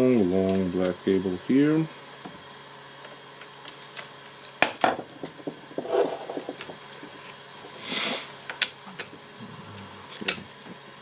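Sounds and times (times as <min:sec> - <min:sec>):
wire rubbing on plastic: 0:05.4 - 0:08.4.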